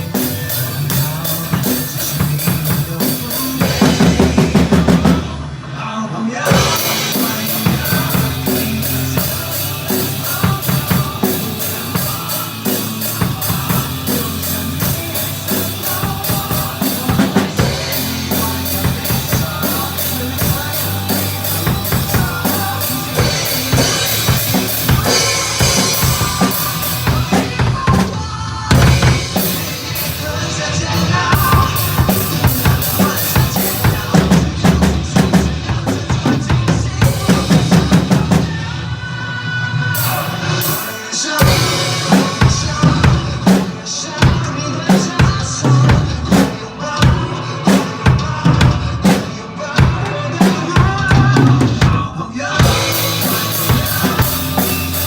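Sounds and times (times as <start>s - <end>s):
drum kit playing: 0.0s - 5.8s, 6.4s - 55.0s
pop-rock song recording: 0.0s - 55.0s.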